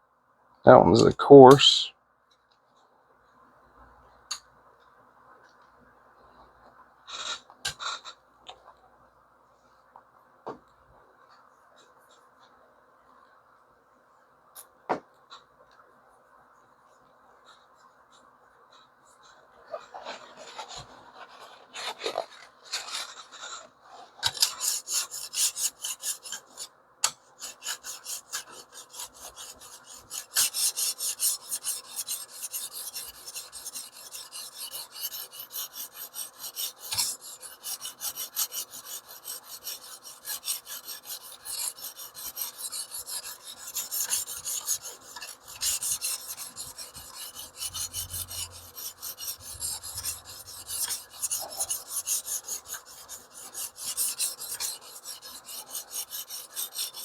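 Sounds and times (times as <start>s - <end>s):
sharpening stone scraping blade: 24.2s - 57.0s.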